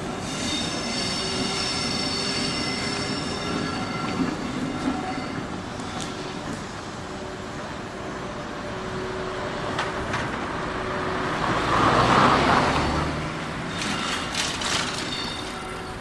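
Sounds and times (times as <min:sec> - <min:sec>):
vehicle driving past: 0:10.9 - 0:13.5.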